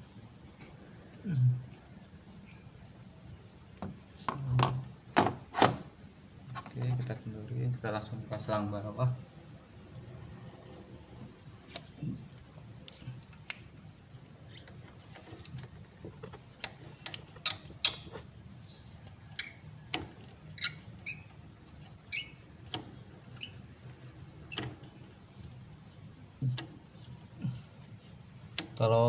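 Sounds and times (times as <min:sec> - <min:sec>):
metallic tool clicks and squeaks: 0:16.3 - 0:19.7, 0:20.5 - 0:21.3, 0:22.1 - 0:22.8.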